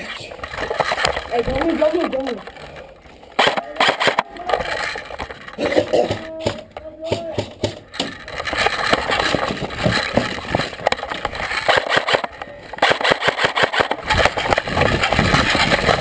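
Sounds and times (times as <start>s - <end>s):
airsoft gun firing bursts: 7.7s - 16.0s.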